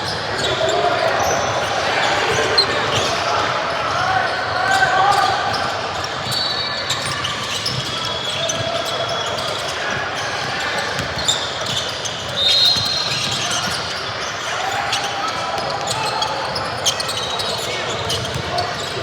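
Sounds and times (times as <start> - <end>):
murmur of voices: 0.0 - 19.0
sneaker squeaks: 3.9 - 19.0.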